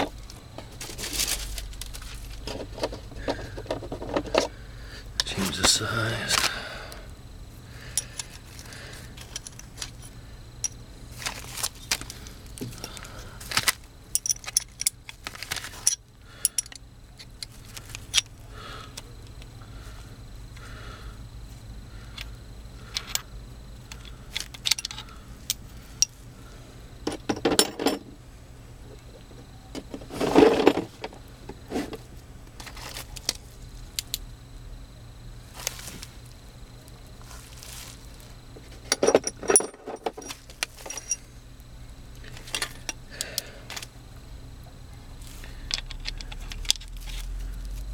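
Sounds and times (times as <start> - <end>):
metal parts clinking: 0.8 - 4.5, 7.9 - 18.3, 22.9 - 23.2, 24.0 - 26.1, 27.1 - 28.1, 29.7 - 32.0, 38.6 - 41.3, 42.2 - 43.0, 45.6 - 47.2
metal clatter: 38.8 - 41.2.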